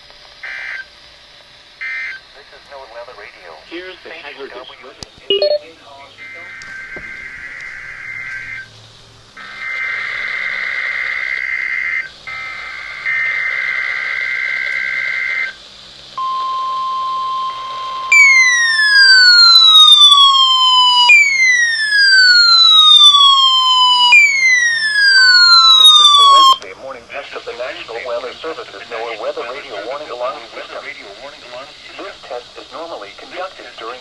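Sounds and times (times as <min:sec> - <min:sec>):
steady warning alarm tone: 0:05.3 - 0:08.8, 0:09.4 - 0:15.6, 0:16.2 - 0:26.6
falling siren-like sweep: 0:06.2 - 0:08.8, 0:16.4 - 0:26.6.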